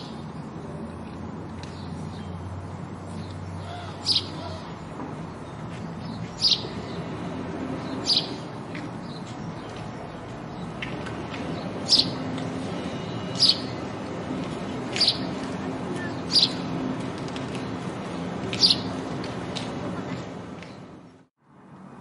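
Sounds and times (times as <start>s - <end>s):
sparrow chirping: 3.1s - 16.8s, 18.5s - 19.0s.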